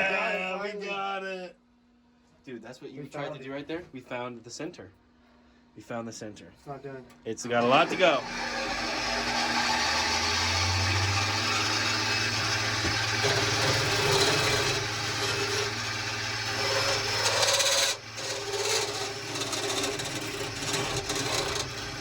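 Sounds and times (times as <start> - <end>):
wood lathe motor hum: 7.6 - 22.0
turning tool rasping on wood: 7.7 - 22.0.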